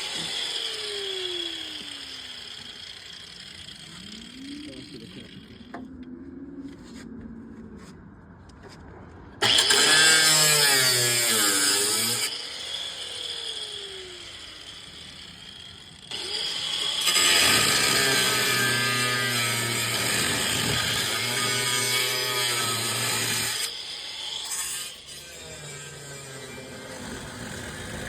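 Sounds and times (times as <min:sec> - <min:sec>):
electric tool cutting sheet metal: 0:00.0 - 0:05.8, 0:09.4 - 0:28.0.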